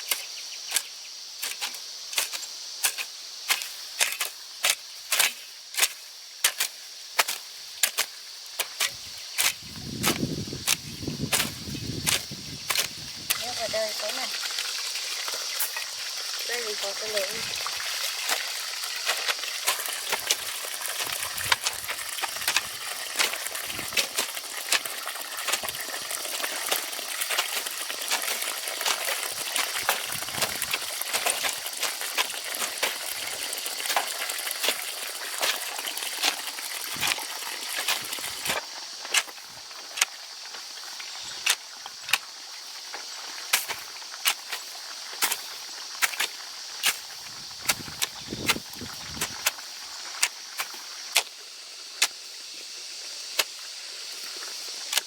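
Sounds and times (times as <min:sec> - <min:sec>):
steady high hiss: 0:00.0 - 0:24.8
hand tools scraping soil: 0:00.0 - 0:52.3, 0:53.0 - 0:55.0.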